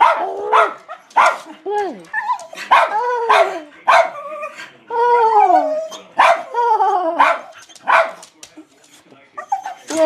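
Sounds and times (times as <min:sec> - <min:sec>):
dogs barking: 0:00.0 - 0:01.5, 0:02.6 - 0:04.5, 0:05.9 - 0:06.6, 0:07.2 - 0:08.2.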